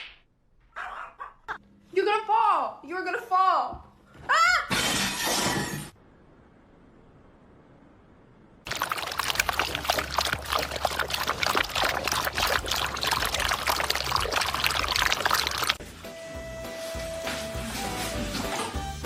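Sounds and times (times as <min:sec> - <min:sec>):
water pouring and splashing: 0:08.7 - 0:15.8.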